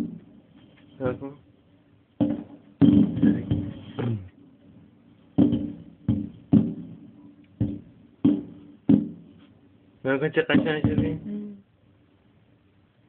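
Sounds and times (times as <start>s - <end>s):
fireworks bangs: 2.2s - 4.1s, 5.4s - 9.4s, 10.4s - 11.2s.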